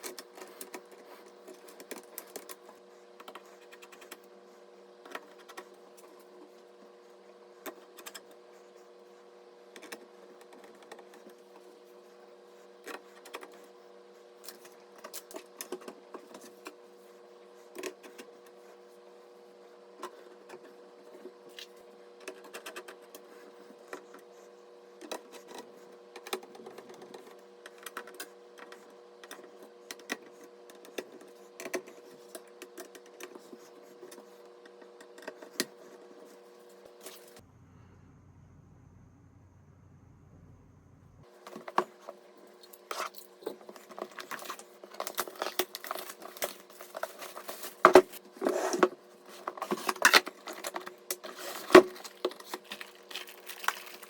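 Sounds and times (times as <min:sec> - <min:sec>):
steady hum: 0:33.2 - 0:54.0.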